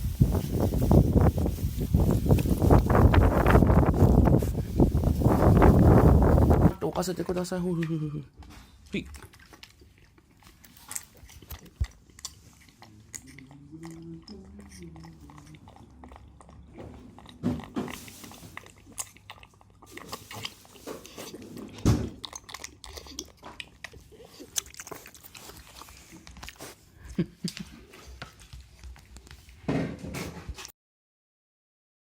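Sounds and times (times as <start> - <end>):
wind thumps on microphone: 0.0 - 6.8
pig chewing and crunching: 0.0 - 30.7.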